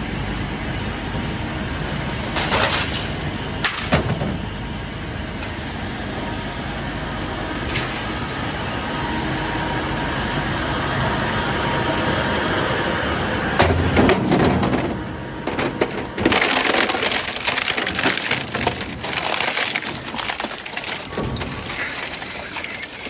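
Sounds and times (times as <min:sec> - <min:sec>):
shredder machine noise: 0:00.0 - 0:23.0
scrap cracking and breaking: 0:02.3 - 0:04.3, 0:15.5 - 0:23.0.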